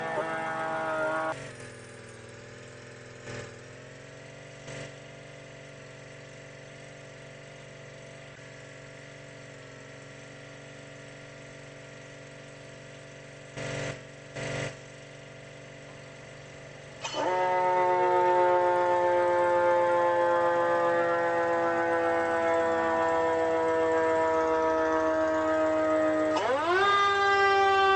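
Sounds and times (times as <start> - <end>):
siren wailing: 0.0 - 1.4, 17.0 - 27.9
fire engine idling: 0.0 - 27.9.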